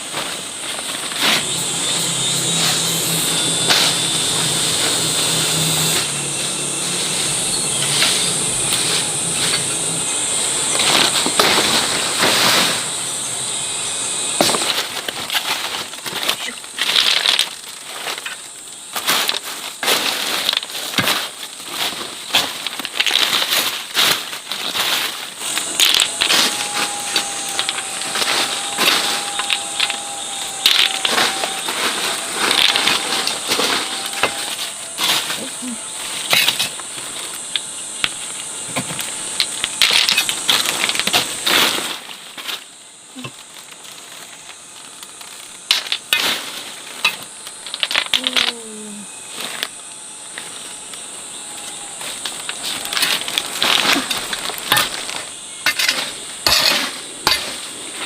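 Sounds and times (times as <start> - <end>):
steady high hiss: 0.0 - 58.0.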